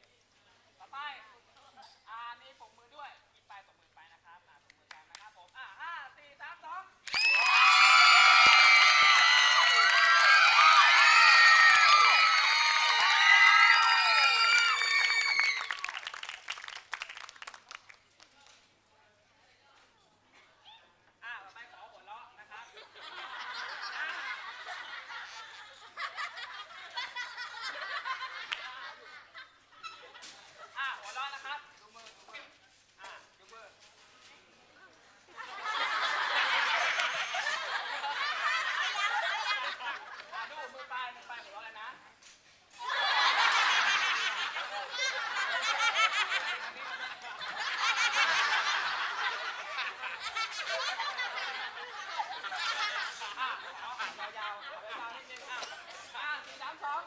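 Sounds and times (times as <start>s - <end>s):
audience laughing: 22.8s - 30.2s, 35.4s - 40.9s, 42.8s - 56.2s.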